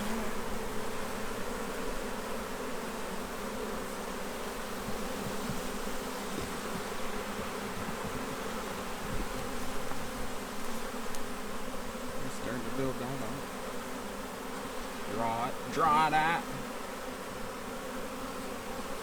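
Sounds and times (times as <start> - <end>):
bees buzzing: 0.0 - 19.0.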